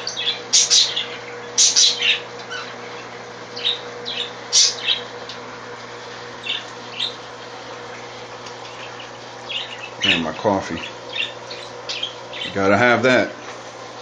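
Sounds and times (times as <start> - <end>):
parakeets squawking and chirping: 0.0 - 5.1, 6.4 - 7.2, 8.6 - 13.0.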